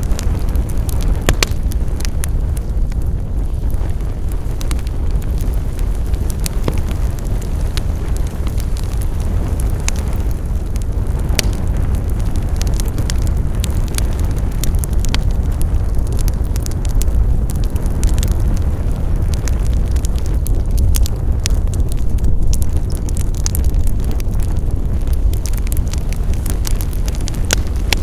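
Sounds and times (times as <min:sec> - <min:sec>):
wood fire crackling: 0:00.0 - 0:28.0.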